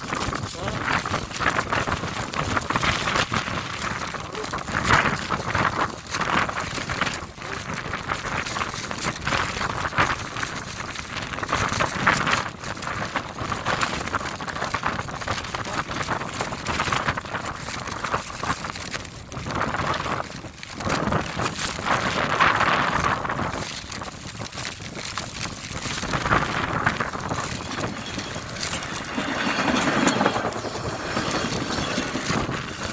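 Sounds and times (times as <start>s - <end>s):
wind gusting over microphone: 0.0s - 32.9s.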